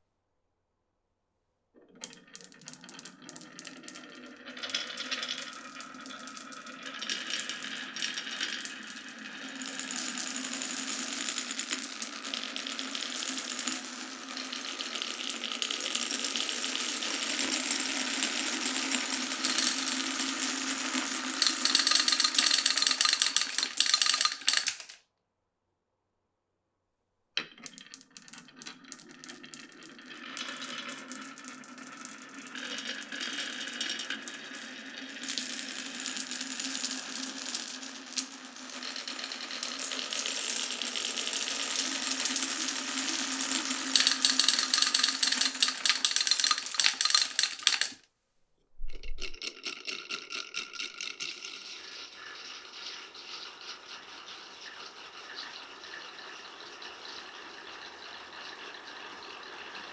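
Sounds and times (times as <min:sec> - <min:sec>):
marbles clattering down wooden run: 0:02.0 - 0:09.6, 0:16.0 - 0:25.0, 0:38.9 - 0:48.0, 0:49.0 - 0:52.5.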